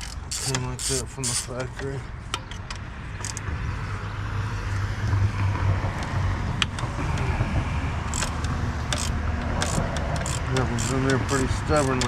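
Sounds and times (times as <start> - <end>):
hand tools clicking on metal: 0.0 - 3.4, 8.1 - 12.0
steady low rumble: 1.5 - 10.8.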